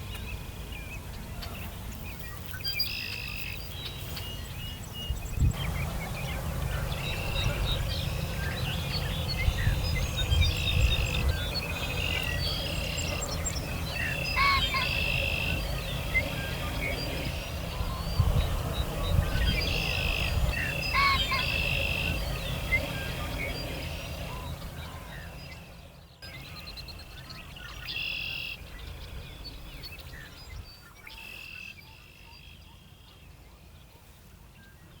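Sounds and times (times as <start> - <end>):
low outdoor rumble: 0.0 - 30.8
birds calling: 0.0 - 33.9
songbirds singing and chirping: 0.0 - 35.0
frogs chirping and trilling: 6.9 - 18.2, 18.9 - 24.2.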